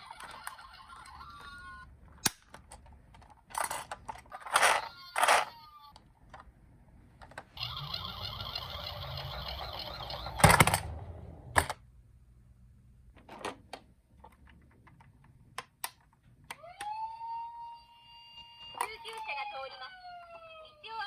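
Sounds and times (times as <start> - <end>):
plastic toy vehicle whirring: 0.0 - 1.9, 3.5 - 6.0, 7.6 - 11.0.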